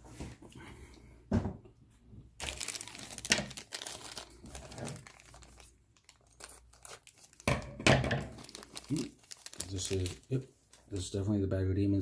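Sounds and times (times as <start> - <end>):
plastic tearing: 2.4 - 11.0
plastic bag crinkling: 2.4 - 11.2.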